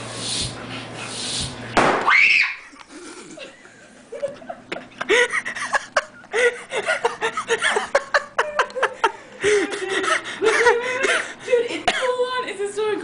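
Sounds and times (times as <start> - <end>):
bike tire bursting bang: 1.8 - 2.2
people laughing: 2.7 - 11.9.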